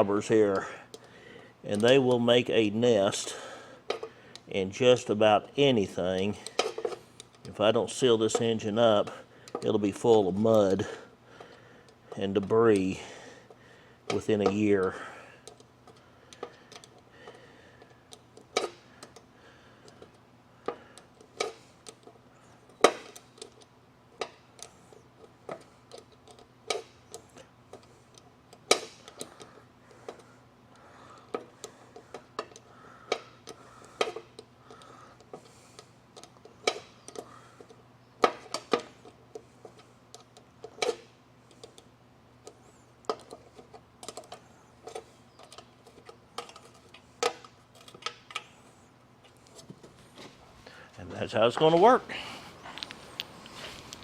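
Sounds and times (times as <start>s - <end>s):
faint steady hum: 0.0s - 54.0s
tools and bolts clinking on metal: 4.9s - 10.9s, 43.0s - 48.6s.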